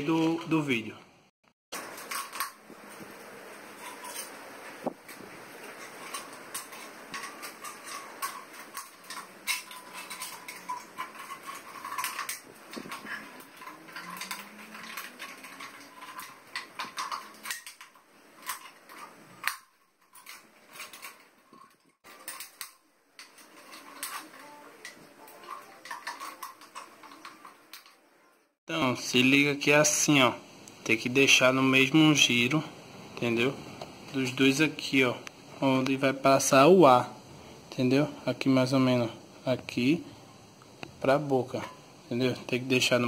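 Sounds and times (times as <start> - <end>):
metallic clicks of can and wire: 3.8 - 28.0.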